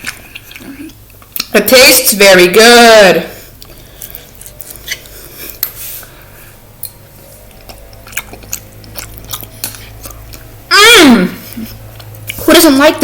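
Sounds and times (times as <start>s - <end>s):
person chewing food: 0.0s - 1.5s, 3.4s - 10.7s, 11.4s - 12.4s
steady low hum: 0.0s - 13.0s.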